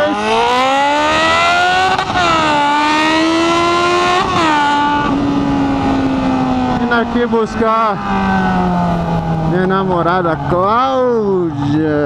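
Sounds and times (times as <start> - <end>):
motorcycle engine accelerating: 0.0 - 12.0.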